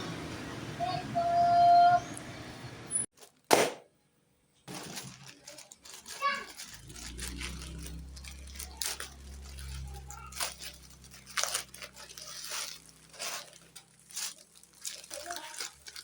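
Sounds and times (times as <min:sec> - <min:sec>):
packaging crinkling and rustling: 0:04.6 - 0:16.0.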